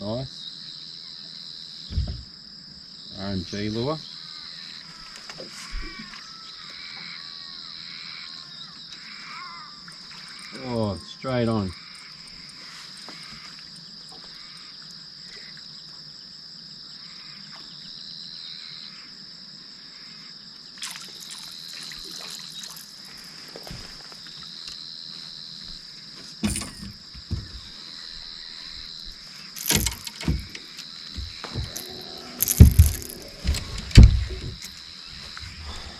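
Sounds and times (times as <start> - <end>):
insects chirring: 0.0 - 35.9
lower insect tone: 0.0 - 35.9
loud short thumps: 1.9 - 2.3, 26.4 - 27.7, 29.6 - 34.7.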